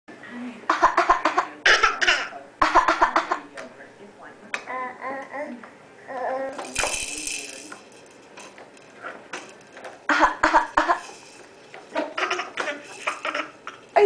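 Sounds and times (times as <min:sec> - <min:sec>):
baby coughing: 0:00.8 - 0:03.4.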